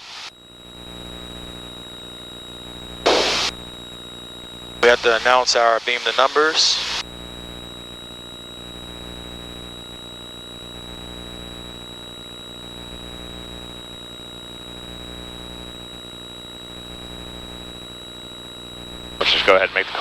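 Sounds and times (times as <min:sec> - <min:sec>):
high electronic whine: 0:03.0 - 0:03.7.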